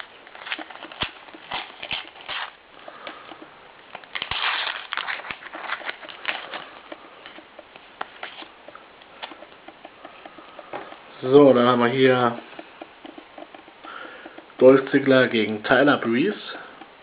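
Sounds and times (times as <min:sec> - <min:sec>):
paper ripping: 0:00.0 - 0:03.2, 0:04.0 - 0:07.4
paper packet crinkling: 0:00.0 - 0:12.6.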